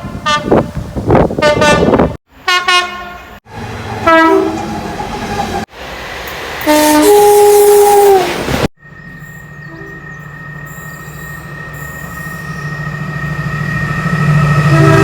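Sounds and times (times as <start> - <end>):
two-tone locomotive horn: 0.0 - 0.7, 1.4 - 3.4, 4.0 - 4.8, 6.6 - 8.3, 9.6 - 10.3, 14.3 - 15.0
train humming with high whine: 0.0 - 15.0.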